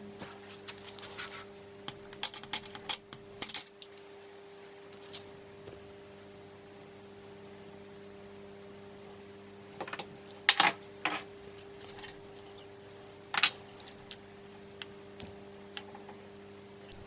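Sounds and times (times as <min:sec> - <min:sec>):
metal tools clinking on workbench: 0:02.2 - 0:03.7.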